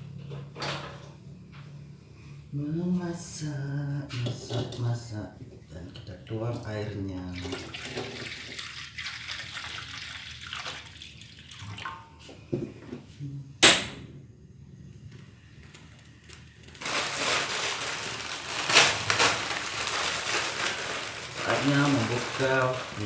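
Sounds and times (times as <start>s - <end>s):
water pouring into a pot: 7.2s - 12.1s
steady rushing hiss: 15.1s - 23.0s.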